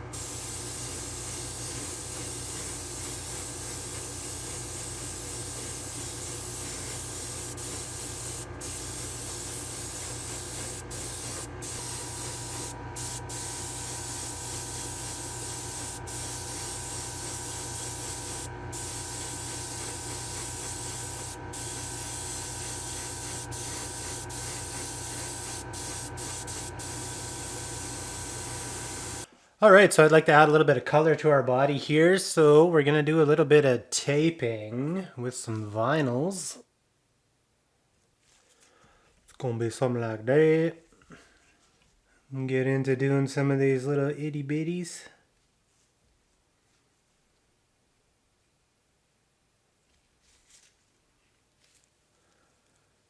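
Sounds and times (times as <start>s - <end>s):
paint spraying hiss: 0.1s - 29.3s.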